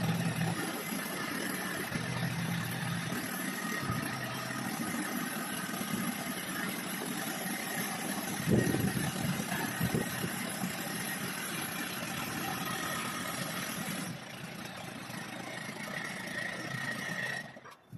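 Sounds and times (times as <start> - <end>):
drilling rig engine running: 0.0 - 17.9.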